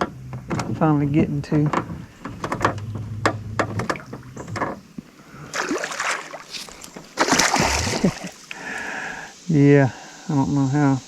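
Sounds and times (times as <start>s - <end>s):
knocks against a boat: 0.0s - 4.8s
water splashing: 2.0s - 9.2s.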